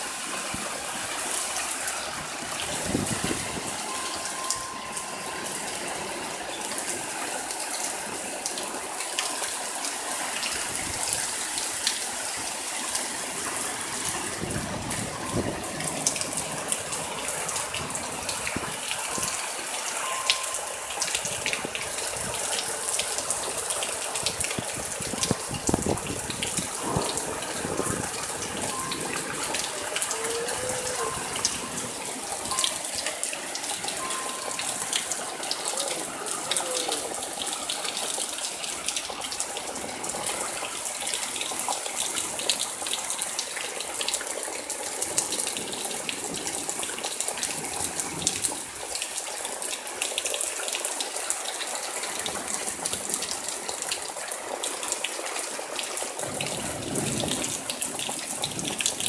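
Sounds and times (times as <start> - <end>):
heavy rain pouring: 0.0 - 59.0
strong wind gusting: 2.5 - 4.0, 14.0 - 19.4, 24.1 - 32.6.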